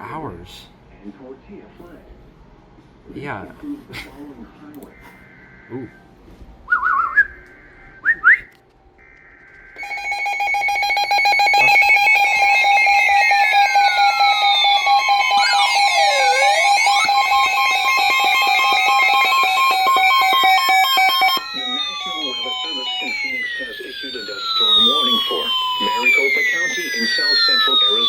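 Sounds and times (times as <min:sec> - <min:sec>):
short rising whistles: 0:06.7 - 0:07.4
pulsing alarm tones: 0:09.0 - 0:28.0.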